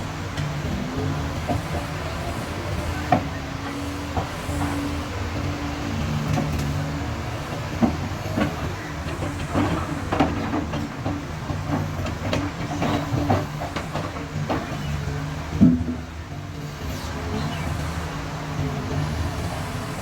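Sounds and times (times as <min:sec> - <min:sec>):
diesel engine under load: 0:00.0 - 0:20.0
metal clanks and knocks: 0:06.0 - 0:18.0.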